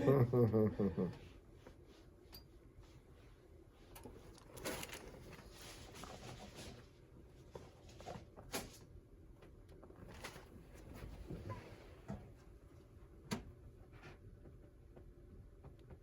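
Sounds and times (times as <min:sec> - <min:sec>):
faint rustling and handling: 0:01.3 - 0:12.7.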